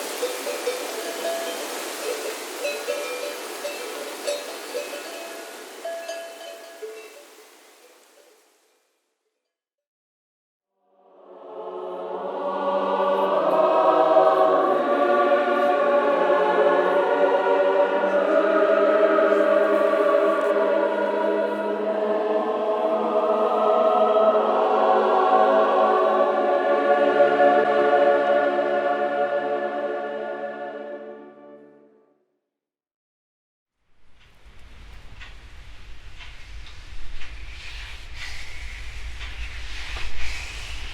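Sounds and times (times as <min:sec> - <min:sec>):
choir singing sustained chords: 0:10.8 - 0:32.2.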